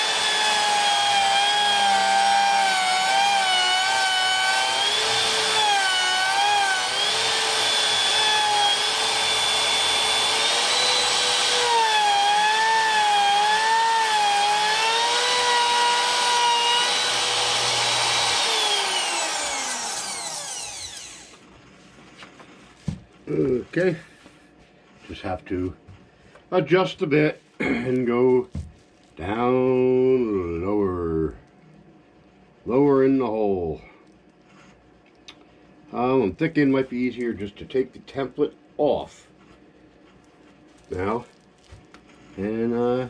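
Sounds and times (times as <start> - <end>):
electric router whining: 0.0 - 21.4.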